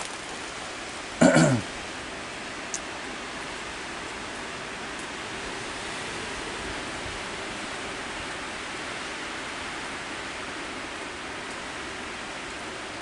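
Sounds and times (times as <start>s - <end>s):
steady rain: 0.0s - 13.0s
wind: 0.0s - 13.0s.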